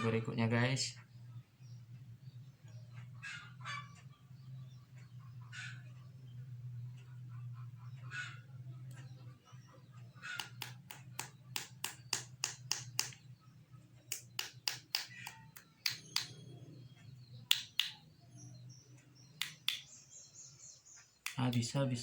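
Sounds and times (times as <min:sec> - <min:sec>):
sharp taps from medicine container: 0:10.4 - 0:13.2, 0:14.1 - 0:16.4, 0:19.4 - 0:19.8.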